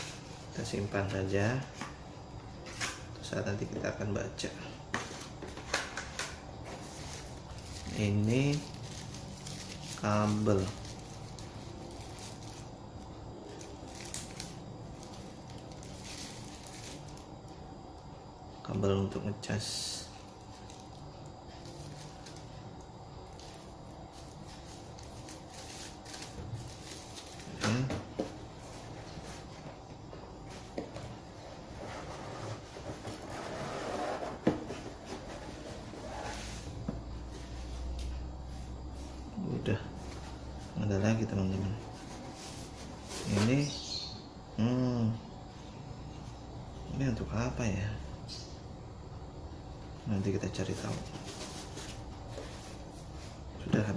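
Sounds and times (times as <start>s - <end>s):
background hiss: 0.0s - 53.9s
rustling of packaging: 5.0s - 12.8s, 13.5s - 17.3s, 23.2s - 29.8s, 50.7s - 53.9s.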